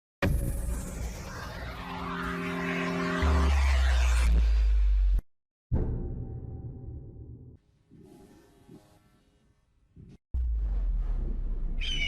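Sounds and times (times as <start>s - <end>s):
intro music with deep bass: 0.2s - 5.2s, 10.4s - 11.8s
high falling sweep: 0.3s - 5.2s.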